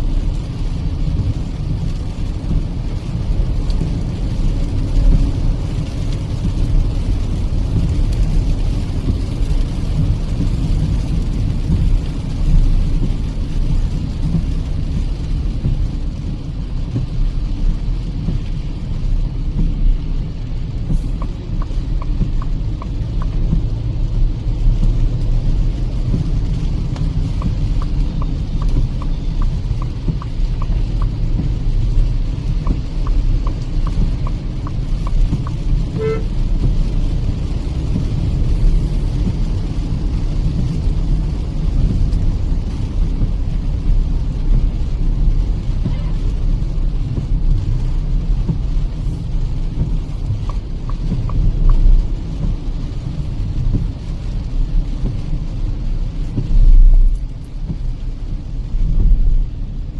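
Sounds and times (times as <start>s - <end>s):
car road and engine rumble: 0.0s - 59.9s
car horn toot: 35.9s - 36.3s.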